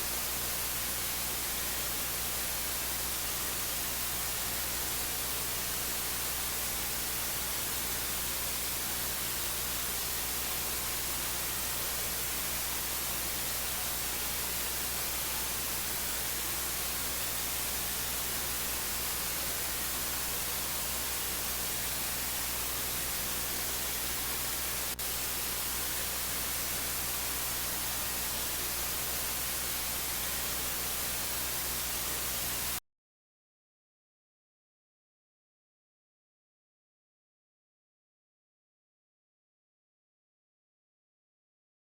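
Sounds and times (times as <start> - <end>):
loud static hiss: 0.0 - 32.8.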